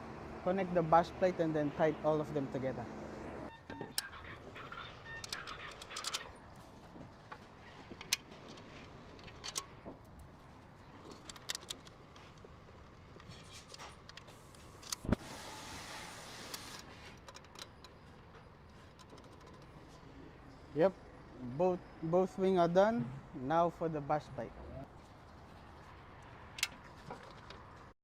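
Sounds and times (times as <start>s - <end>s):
metallic clicks of bolts and tools: 5.2s - 6.3s, 8.0s - 9.7s, 11.1s - 11.9s, 17.2s - 18.0s, 26.5s - 27.6s.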